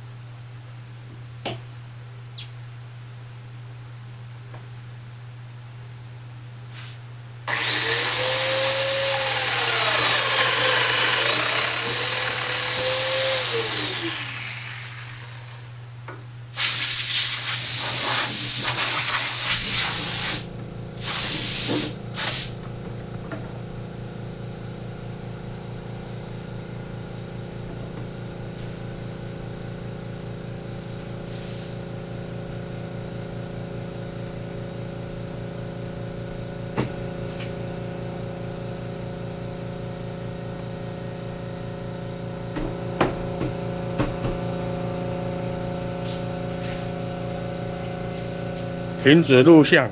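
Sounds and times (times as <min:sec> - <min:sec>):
machine humming with throb: 0:07.5 - 0:15.8
woodworking power tool running: 0:07.5 - 0:16.2, 0:37.9 - 0:49.6
loud hissing: 0:16.6 - 0:22.5.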